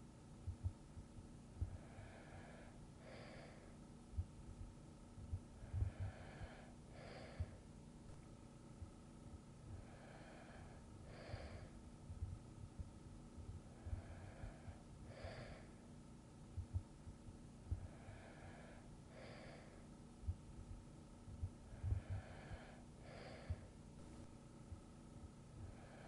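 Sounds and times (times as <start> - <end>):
faint low thuds: 0.4 - 1.8, 4.1 - 6.6, 11.4 - 14.6, 20.2 - 22.7
person breathing asleep: 1.6 - 4.3, 5.4 - 8.3, 9.7 - 12.8, 13.4 - 16.0, 17.6 - 20.4, 21.4 - 24.4, 25.6 - 26.0.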